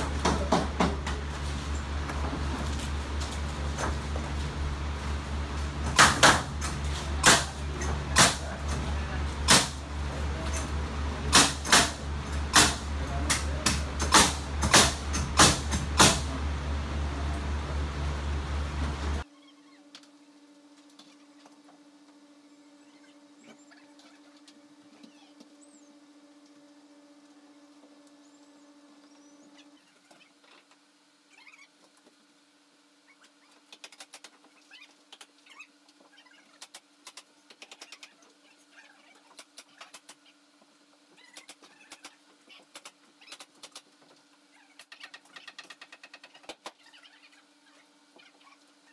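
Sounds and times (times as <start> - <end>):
steady low hum: 0.0 - 33.2
hammer nailing lumber: 5.9 - 6.6, 11.3 - 16.4.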